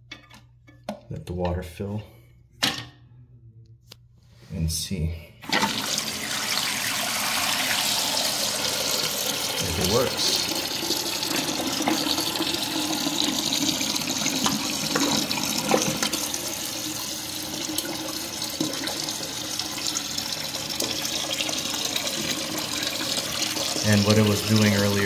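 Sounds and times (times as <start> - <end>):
water running into toilet tank: 5.4 - 25.0.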